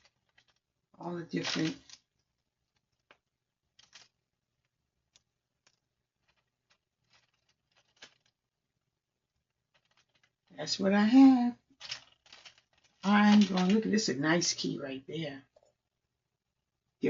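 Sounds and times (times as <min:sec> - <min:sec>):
small items clicking and rustling: 0:00.0 - 0:08.4, 0:09.5 - 0:10.6, 0:11.7 - 0:14.1.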